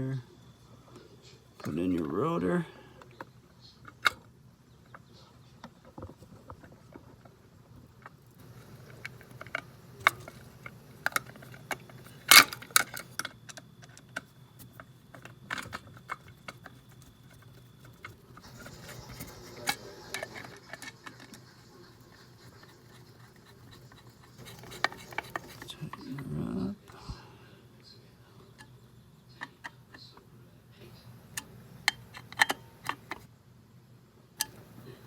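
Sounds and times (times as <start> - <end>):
small parts clicking and clattering: 5.6 - 26.2, 30.8 - 33.3, 34.4 - 35.0.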